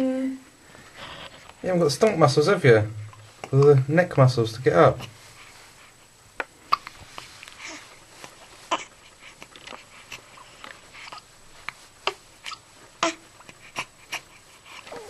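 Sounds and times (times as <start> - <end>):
baby hiccupping: 6.7 - 7.0, 12.0 - 14.2.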